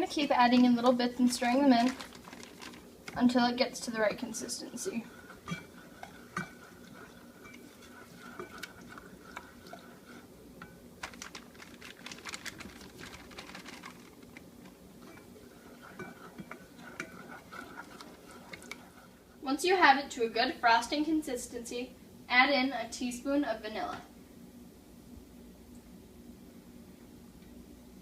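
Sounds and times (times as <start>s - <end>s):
utensil scraping and clinking in pan: 0.0s - 11.7s, 15.0s - 19.1s
faint steady hum: 0.0s - 28.0s.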